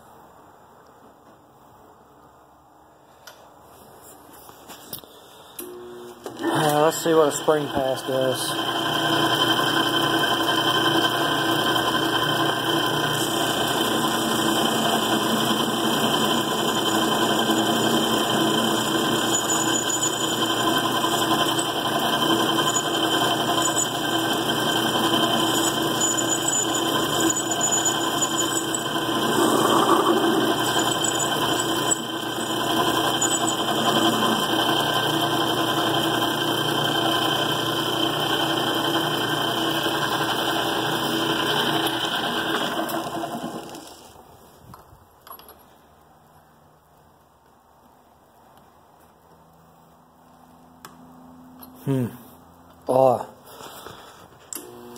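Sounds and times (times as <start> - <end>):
metal lathe whirring: 5.6 - 43.9.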